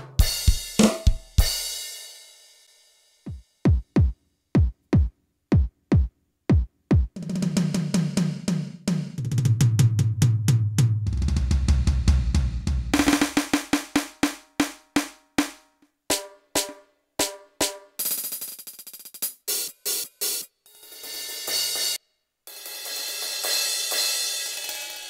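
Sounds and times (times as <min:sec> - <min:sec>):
electronic drum rolls: 0:11.0 - 0:13.9
electronic tom hits: 0:11.6 - 0:13.7
cymbal and snare hits: 0:12.9 - 0:15.6.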